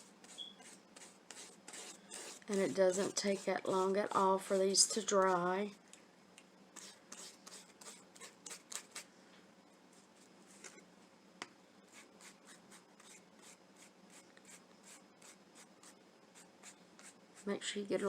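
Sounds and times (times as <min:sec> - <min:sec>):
paintbrush strokes: 0:00.0 - 0:05.5.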